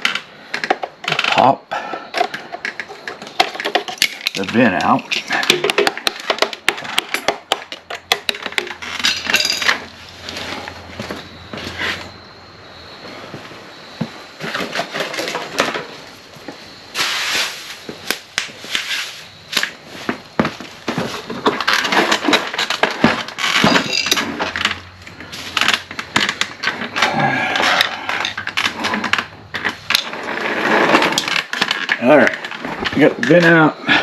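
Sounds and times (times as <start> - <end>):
plastic clicking and scraping: 0.0 - 10.6, 20.5 - 33.6.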